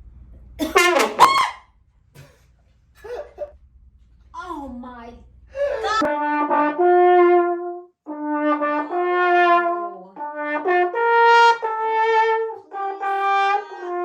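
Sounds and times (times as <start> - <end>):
trombone notes: 0.6 - 1.6, 6.0 - 14.0.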